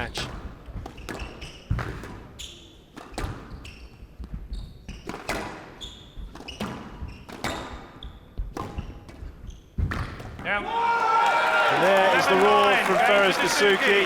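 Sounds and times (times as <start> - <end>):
squash ball struck by rackets: 2.9 - 3.6, 5.0 - 10.4
shoes squeaking on wooden floor: 3.5 - 10.1.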